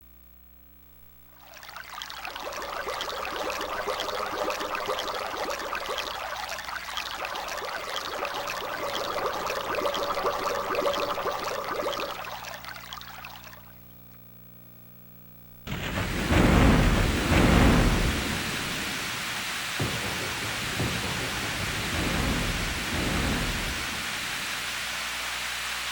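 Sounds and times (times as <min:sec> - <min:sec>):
rain-like hiss: 0:01.3 - 0:13.7, 0:15.7 - 0:25.9
low thunder rumble: 0:15.7 - 0:25.8.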